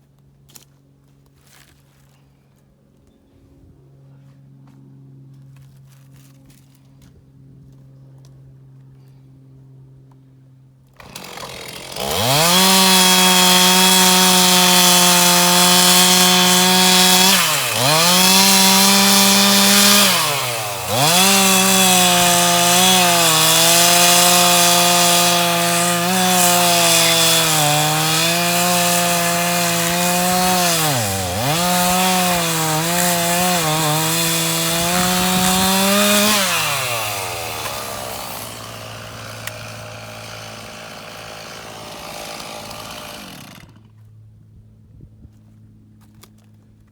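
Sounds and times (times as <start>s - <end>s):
chainsaw cutting wood: 10.9s - 44.1s.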